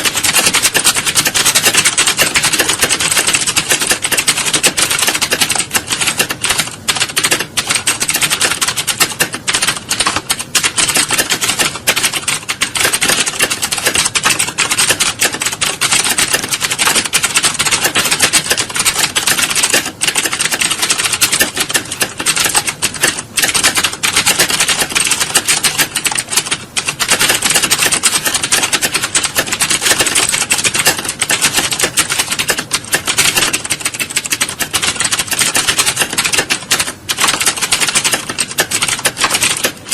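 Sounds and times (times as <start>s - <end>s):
rapid keyboard typing: 0.0s - 39.9s.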